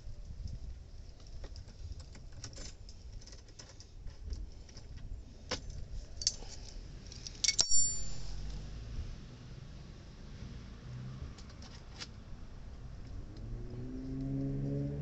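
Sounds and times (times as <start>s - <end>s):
metallic clicks of hand tools: 6.2s - 8.2s.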